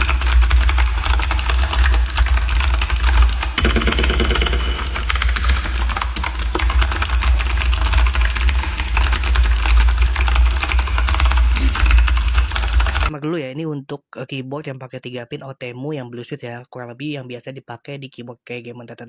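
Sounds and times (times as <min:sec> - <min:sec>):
mechanical keyboard typing: 0:00.0 - 0:13.1
steady low hum: 0:00.0 - 0:13.1.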